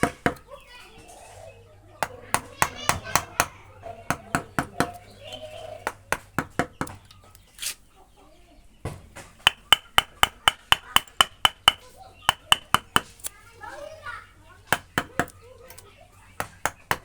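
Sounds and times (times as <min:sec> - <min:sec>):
hand tool striking wood: 0:00.0 - 0:00.4, 0:05.8 - 0:07.8, 0:09.4 - 0:13.3, 0:14.7 - 0:15.8, 0:16.4 - 0:17.0.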